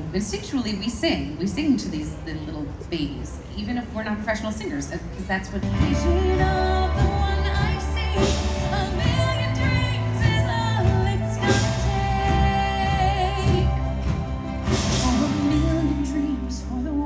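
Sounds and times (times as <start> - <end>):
instrumental backing track: 5.6 - 17.0
woman singing with vibrato: 5.6 - 17.0.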